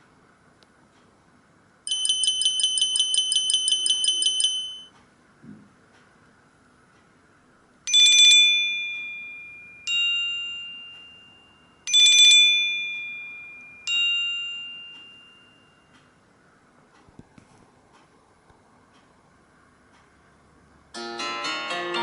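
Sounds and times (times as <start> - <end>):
two-note electronic ringtone chime: 1.9 - 4.9, 7.9 - 15.9.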